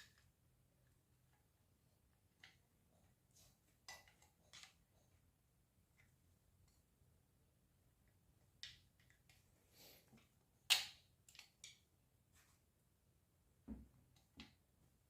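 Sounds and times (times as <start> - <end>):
small parts clicking and tapping: 3.8 - 4.8, 8.0 - 9.4, 10.1 - 11.9.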